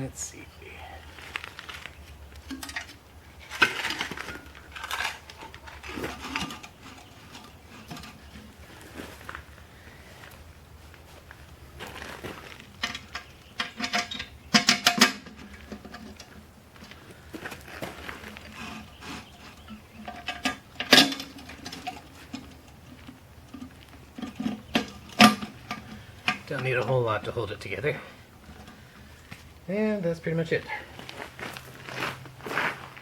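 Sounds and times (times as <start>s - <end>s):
hard objects knocking and rattling: 2.1s - 9.6s, 11.8s - 26.9s
sharp clanks: 12.8s - 16.4s, 17.8s - 27.8s.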